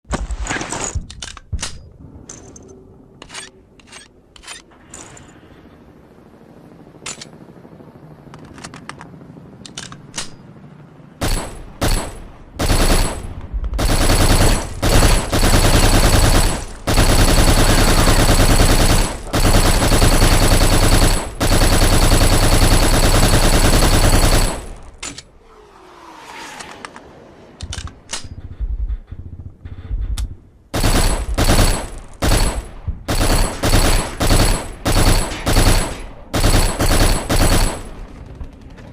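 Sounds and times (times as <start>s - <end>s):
rifle gunshots: 11.2s - 25.0s, 30.7s - 38.1s.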